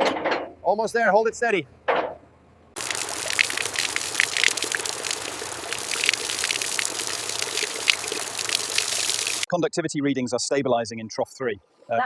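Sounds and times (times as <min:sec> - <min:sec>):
water gushing: 0:02.8 - 0:09.5
water splashes: 0:02.8 - 0:09.5.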